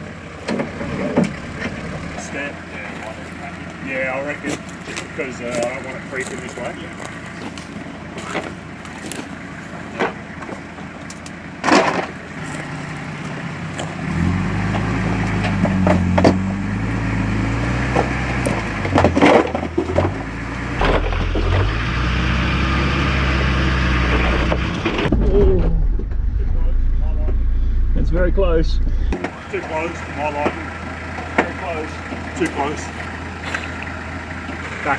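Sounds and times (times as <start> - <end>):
low engine drone: 0.0 - 19.0, 19.8 - 34.9
rocks cracking under tyres: 1.6 - 16.4.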